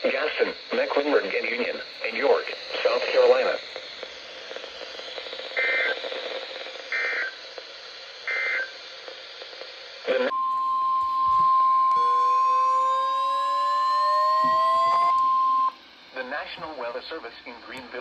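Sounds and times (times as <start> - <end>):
radio static: 0.0 - 10.4, 16.1 - 18.0
steady alarm tone: 10.3 - 15.8.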